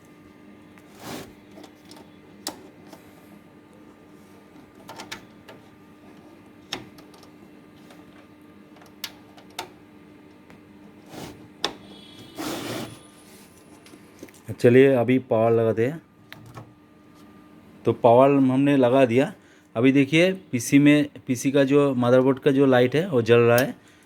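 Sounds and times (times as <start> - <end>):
faint steady hum: 0.0 - 24.0
cable connectors clicking into ports: 8.8 - 9.8.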